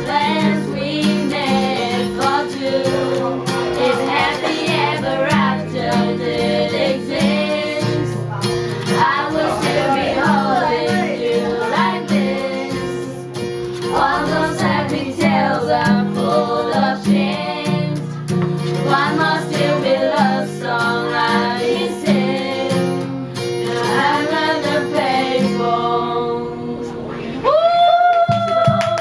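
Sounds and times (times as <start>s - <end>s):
acoustic guitar: 0.0s - 29.0s
person singing: 9.0s - 13.3s.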